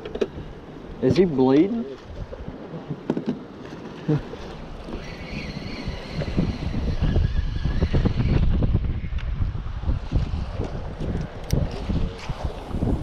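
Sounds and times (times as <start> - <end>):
wind buffeting microphone: 0.0 - 3.0, 4.2 - 13.0.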